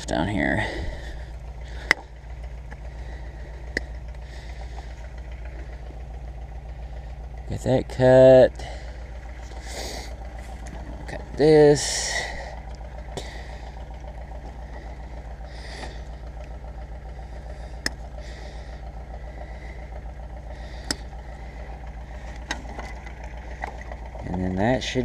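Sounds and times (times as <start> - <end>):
engine idling: 0.0 - 25.0
wire cutter clicks: 17.8 - 18.0.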